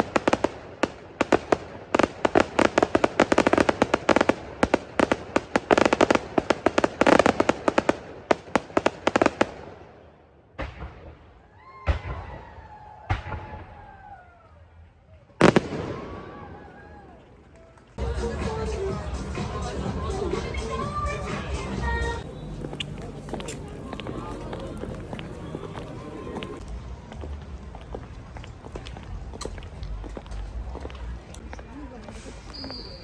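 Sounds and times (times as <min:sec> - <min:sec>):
fireworks crackling and booming: 0:00.0 - 0:14.1, 0:15.3 - 0:22.8.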